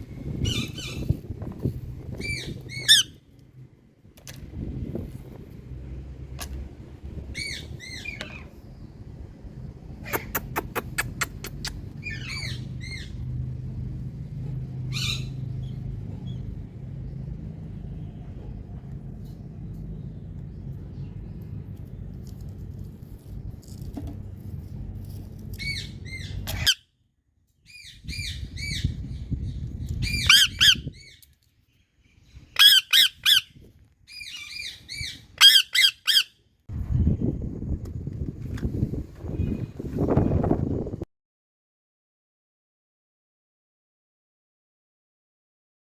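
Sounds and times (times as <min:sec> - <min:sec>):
parakeet squawking: 0:02.2 - 0:03.2, 0:10.0 - 0:13.2, 0:30.0 - 0:31.2, 0:32.5 - 0:33.5, 0:34.2 - 0:36.4.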